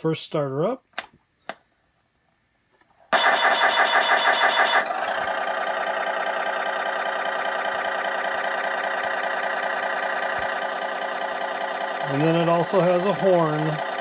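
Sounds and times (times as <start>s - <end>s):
toy truck engine idling sound: 3.2s - 14.0s.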